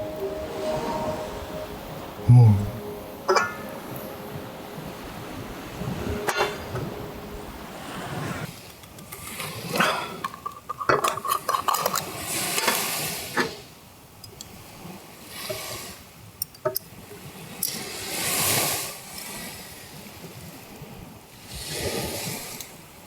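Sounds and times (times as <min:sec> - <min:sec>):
spoon clinking and scraping dishes: 0:10.2 - 0:12.1.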